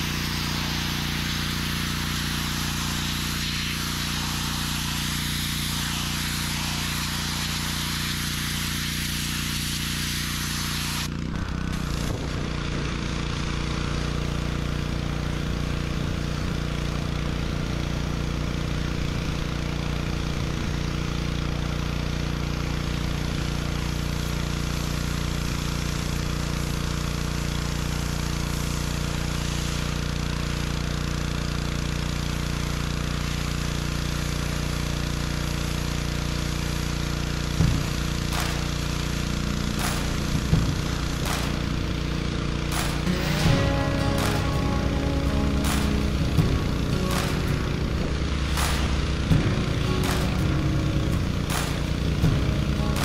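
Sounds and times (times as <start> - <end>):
water spray hissing: 0.0 - 11.1, 13.9 - 53.0
pressure washer engine running: 0.0 - 53.0
sharp knock: 39.8 - 41.9, 42.7 - 53.0.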